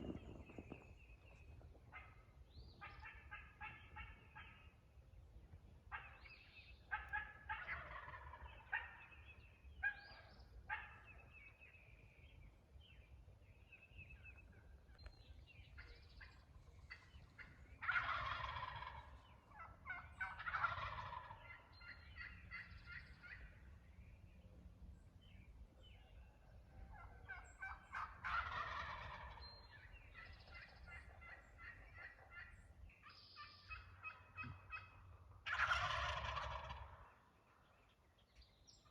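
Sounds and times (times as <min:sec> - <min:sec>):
turkeys gobbling: 0:00.0 - 0:04.8, 0:05.9 - 0:11.6, 0:15.7 - 0:23.7, 0:26.0 - 0:38.2.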